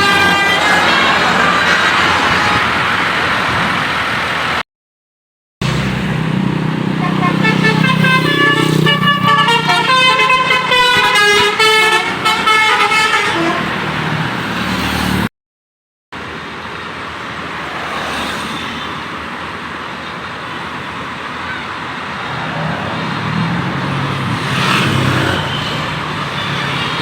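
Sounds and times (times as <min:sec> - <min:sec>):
road and traffic noise: 0:00.0 - 0:04.6, 0:05.6 - 0:15.3, 0:16.1 - 0:27.0
musical air horn playing a tune: 0:07.0 - 0:13.8.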